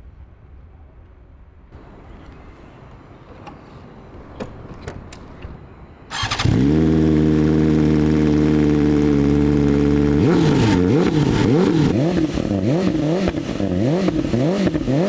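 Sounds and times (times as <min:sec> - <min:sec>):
engine revving: 0:06.1 - 0:15.0
motorcycle engine idling: 0:06.1 - 0:15.0
motorcycle engine starting: 0:06.1 - 0:15.0.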